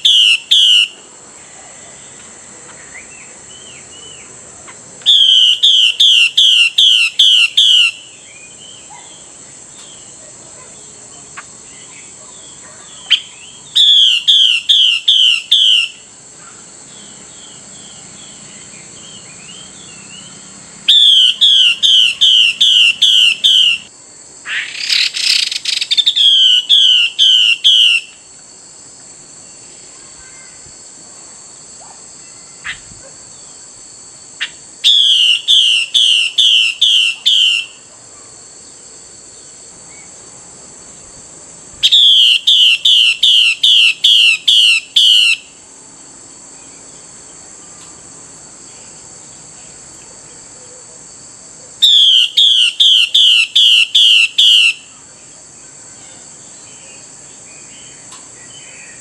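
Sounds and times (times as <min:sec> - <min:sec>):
high insect drone: 0:00.0 - 0:59.0
bird whistling downslurred notes: 0:05.1 - 0:07.9
harsh rasping bird call: 0:41.8 - 0:45.6, 0:51.8 - 0:54.9.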